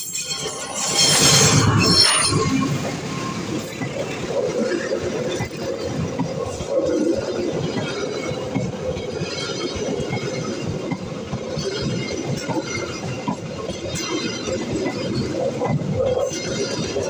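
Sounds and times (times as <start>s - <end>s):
train wheels clattering: 0.0s - 17.0s.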